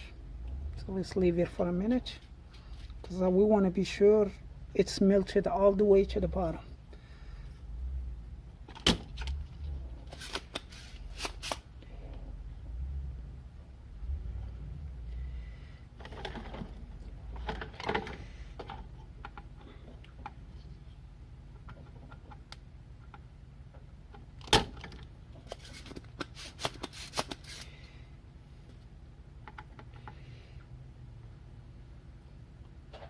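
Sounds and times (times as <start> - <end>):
low hum: 0.0 - 10.2, 11.8 - 26.0.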